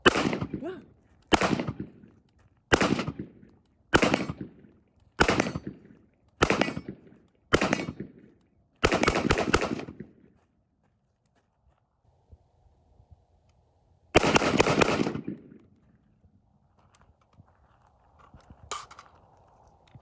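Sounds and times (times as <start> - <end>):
rifle gunshots: 0.0 - 2.1, 2.7 - 4.6, 5.2 - 10.1, 14.2 - 15.6.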